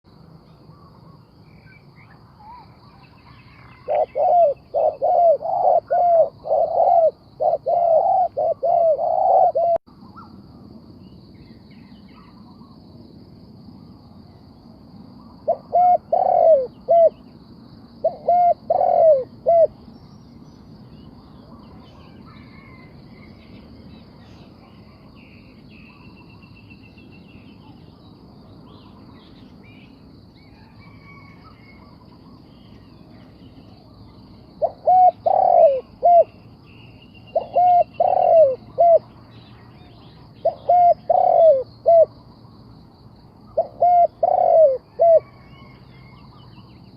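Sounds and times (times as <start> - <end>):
birds chirping: 0.5 - 10.3, 18.0 - 42.1
dove cooing: 3.5 - 9.8, 15.4 - 17.2, 18.0 - 19.8, 34.6 - 36.4, 37.3 - 39.0, 40.4 - 42.1, 43.5 - 45.7.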